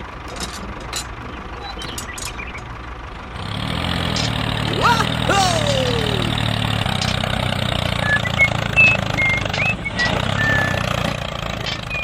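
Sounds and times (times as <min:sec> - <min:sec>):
engine idling: 0:00.0 - 0:12.0
high whistled chirps: 0:08.0 - 0:11.0.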